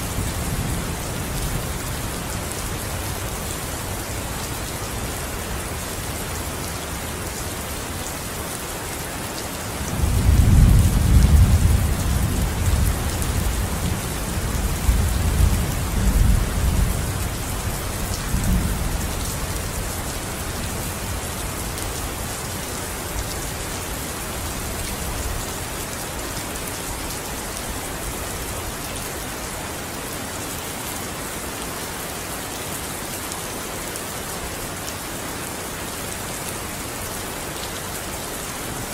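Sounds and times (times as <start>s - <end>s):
steady rain falling: 0.0s - 38.9s.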